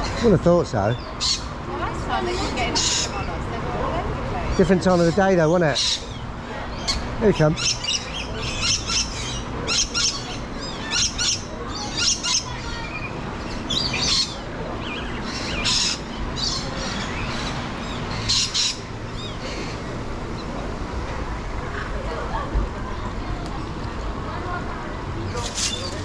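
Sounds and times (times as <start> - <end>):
lorikeets screeching: 0.0 - 20.7, 25.3 - 26.0.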